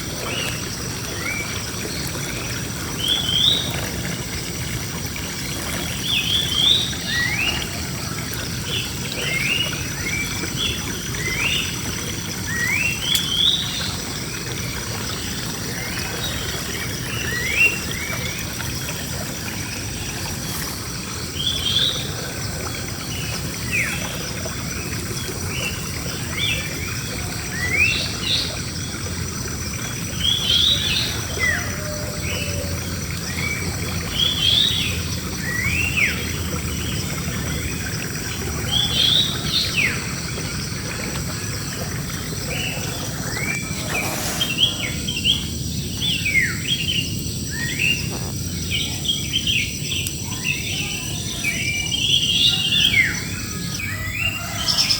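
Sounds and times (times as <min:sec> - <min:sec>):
birds chirping: 0:38.4 - 0:54.9.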